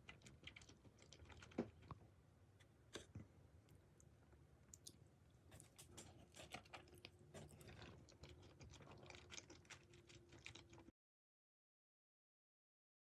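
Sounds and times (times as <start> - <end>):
person chewing food: 0.1 - 1.9, 4.7 - 10.9.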